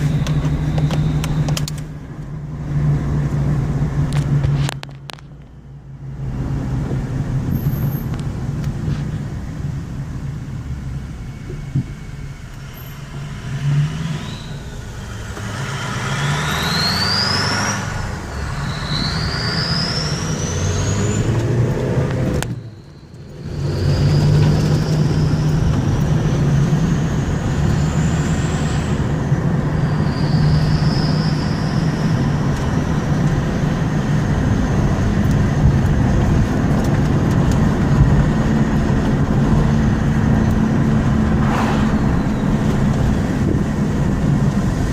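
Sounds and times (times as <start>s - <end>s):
turbocharger whistling: 0.0s - 1.8s, 11.0s - 35.1s, 39.3s - 44.9s
diesel truck engine accelerating: 0.0s - 44.9s.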